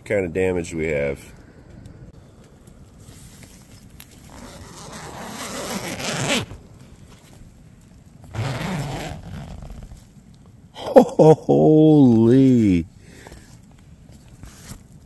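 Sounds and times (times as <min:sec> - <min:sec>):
tent zipper being pulled: 0:04.2 - 0:06.6, 0:08.3 - 0:10.0.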